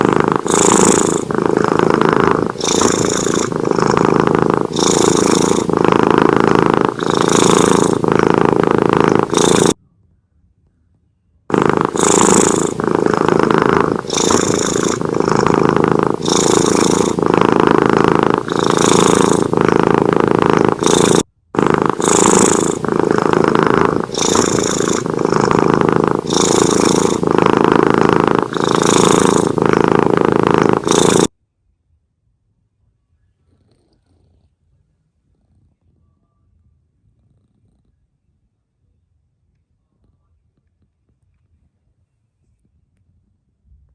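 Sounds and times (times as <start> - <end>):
cat snoring: 0.0 - 9.8, 11.5 - 31.3, 33.3 - 34.6, 35.2 - 36.2, 37.1 - 38.1.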